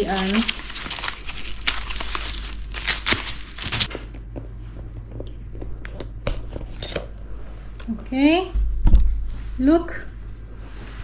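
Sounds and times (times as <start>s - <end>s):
paper packaging crinkling: 0.0s - 3.9s.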